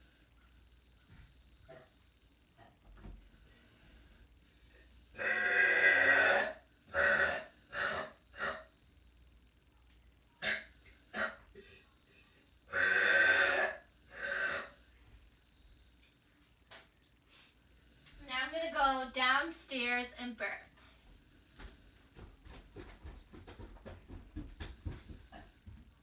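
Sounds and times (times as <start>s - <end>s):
woman burping: 5.2s - 8.7s, 10.4s - 11.6s.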